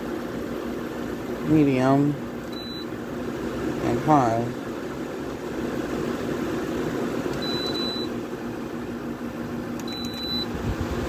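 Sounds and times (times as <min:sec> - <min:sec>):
air conditioner whirring: 0:00.0 - 0:11.0
control panel beep: 0:02.5 - 0:02.9, 0:07.4 - 0:08.1, 0:09.8 - 0:10.5.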